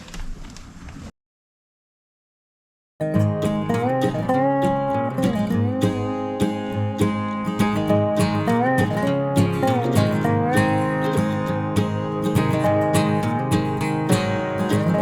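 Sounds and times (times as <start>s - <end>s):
country acoustic guitar music: 3.0s - 15.0s.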